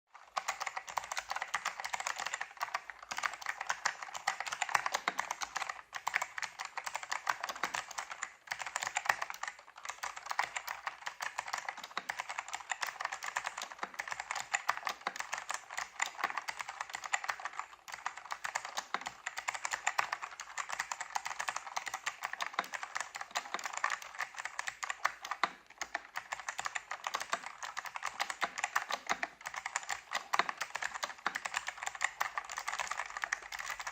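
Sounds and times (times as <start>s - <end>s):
mechanical keyboard typing: 0.2s - 33.9s.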